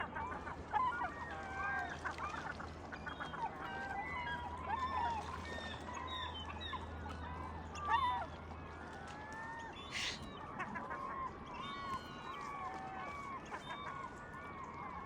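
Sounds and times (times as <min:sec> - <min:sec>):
flock of birds calling: 0:09.2 - 0:15.0.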